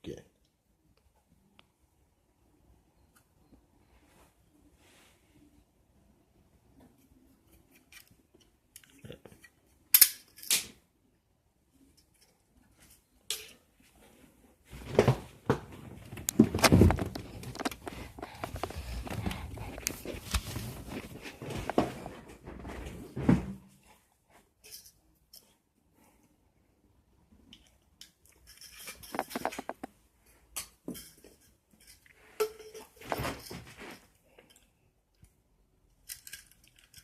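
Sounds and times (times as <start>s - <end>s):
clatter of plastic pieces: 28.5s - 29.9s, 36.0s - 37.0s.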